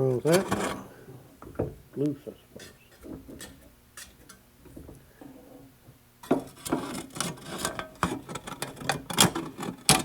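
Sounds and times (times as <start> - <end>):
hand tools clicking and scraping: 0.2 - 0.9, 6.4 - 10.0.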